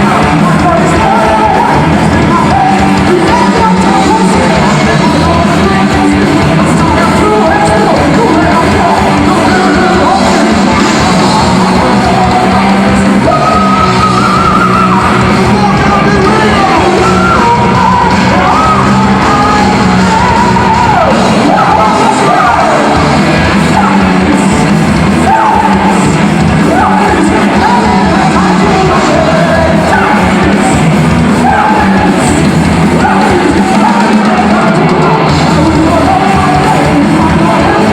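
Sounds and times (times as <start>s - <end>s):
heavy metal band playing: 0.0s - 37.9s
person singing: 0.0s - 37.9s.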